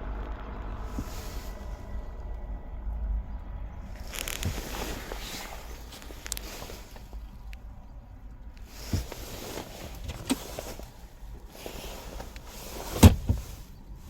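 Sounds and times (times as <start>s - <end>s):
handling knocks and clicks: 8.6s - 11.0s, 11.6s - 13.7s
loud dull thump: 13.0s - 13.5s.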